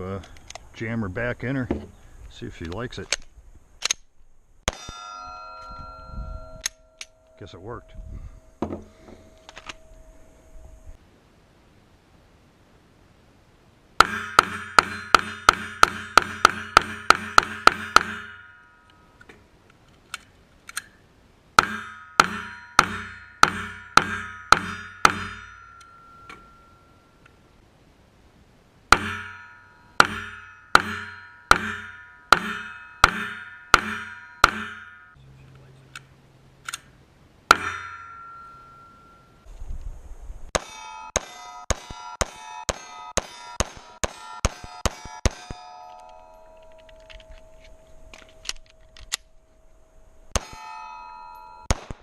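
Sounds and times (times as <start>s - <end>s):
bullets ringing steel targets: 4.7s - 11.0s, 14.0s - 19.2s, 21.6s - 27.3s, 28.9s - 35.2s, 37.5s - 39.5s, 40.6s - 52.0s
pistol shots: 40.6s - 45.7s, 51.7s - 52.0s.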